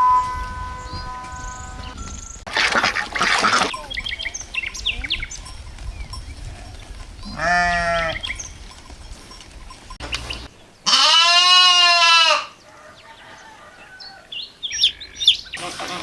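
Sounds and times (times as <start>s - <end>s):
small bird chirps: 3.7s - 6.4s
sheep or goat bleating: 7.2s - 8.3s, 10.8s - 12.6s.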